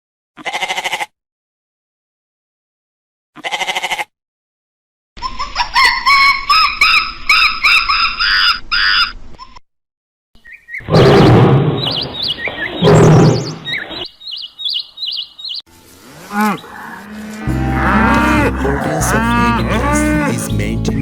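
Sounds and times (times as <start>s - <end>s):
animal calls: 10.8s - 20.4s.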